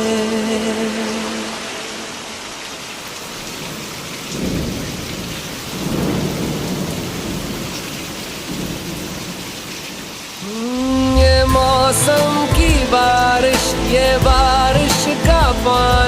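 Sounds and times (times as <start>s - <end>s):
steady rain: 0.0s - 16.0s
thunder rumbling: 3.4s - 13.2s.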